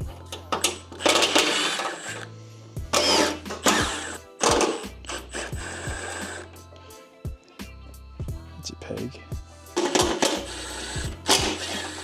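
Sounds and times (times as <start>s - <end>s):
background music with bass: 0.0s - 1.2s, 2.0s - 12.0s
small power tool whirring: 0.0s - 6.7s, 9.8s - 12.0s.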